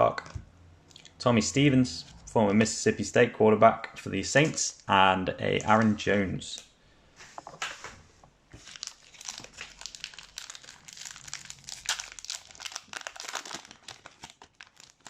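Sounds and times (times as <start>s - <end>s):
plastic wrapper crinkling: 8.6s - 15.0s.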